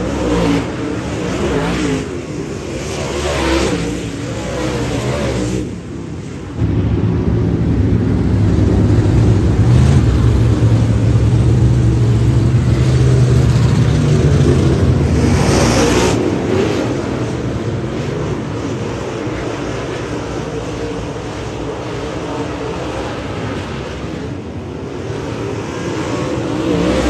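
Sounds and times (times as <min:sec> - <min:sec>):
race car engine: 0:00.0 - 0:27.0
brief rushing noise: 0:06.6 - 0:11.3.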